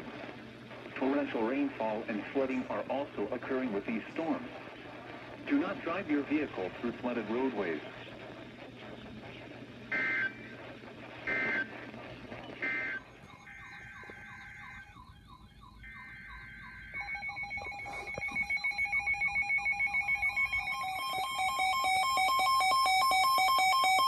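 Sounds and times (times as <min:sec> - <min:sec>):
rapid electronic alarm beeping: 0:09.8 - 0:24.0
harsh two-pitch data bursts: 0:09.9 - 0:10.6, 0:11.2 - 0:11.7, 0:12.6 - 0:24.0.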